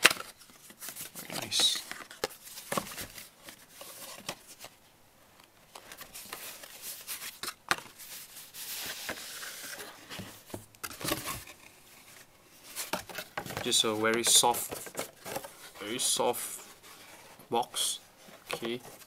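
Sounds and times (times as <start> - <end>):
papery rustle and slide: 5.8 - 19.0.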